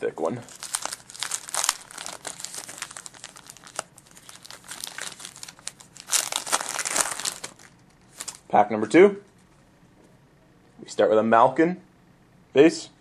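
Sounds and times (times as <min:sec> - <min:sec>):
wrapper crinkling and tearing: 0:00.4 - 0:08.5.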